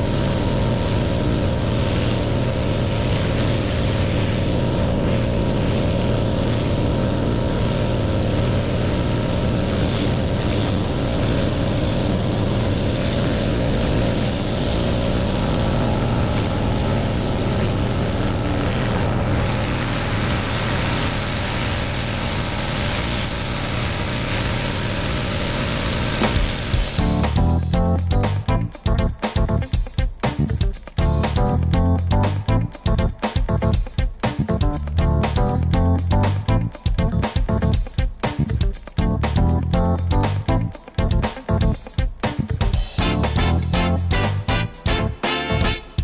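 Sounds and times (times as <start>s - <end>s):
water spraying hiss: 0.0s - 31.4s
pressure washer engine hum: 0.0s - 46.0s.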